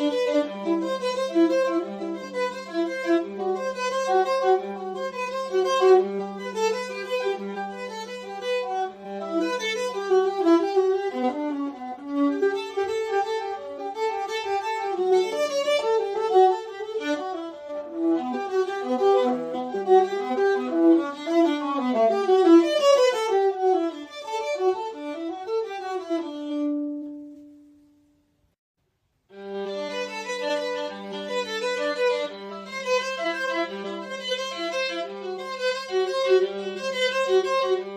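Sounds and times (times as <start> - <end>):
viola playing a melody: 0.0 - 28.2, 29.3 - 37.9.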